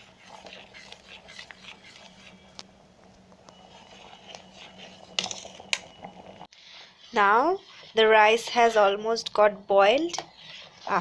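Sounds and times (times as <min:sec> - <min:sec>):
spoon scraping a pot: 0:00.0 - 0:02.6, 0:03.5 - 0:06.1, 0:06.7 - 0:09.0, 0:09.9 - 0:11.0.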